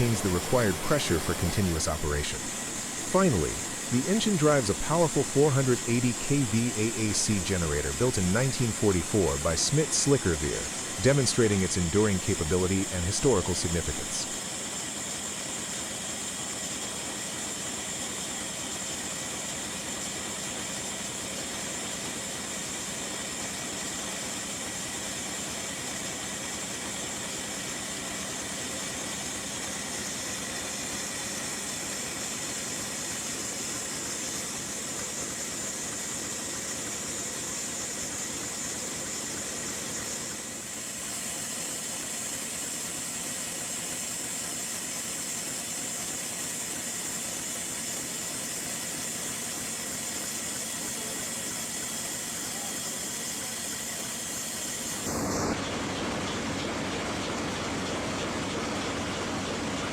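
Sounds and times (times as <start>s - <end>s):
diesel engine running: 0.0s - 14.3s, 55.0s - 59.9s
strong high hiss: 0.0s - 14.3s.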